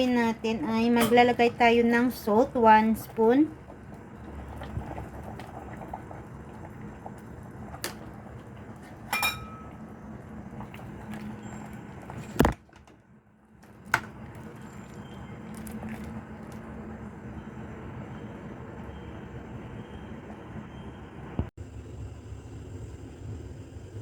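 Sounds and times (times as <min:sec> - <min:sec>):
utensil clinking against metal pot: 0:00.9 - 0:01.6, 0:09.1 - 0:09.8.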